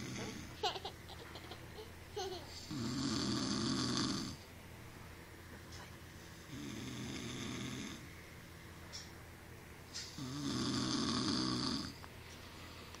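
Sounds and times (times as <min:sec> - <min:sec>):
man snoring: 0:00.0 - 0:00.5, 0:02.7 - 0:04.4, 0:06.5 - 0:08.0, 0:10.2 - 0:12.0.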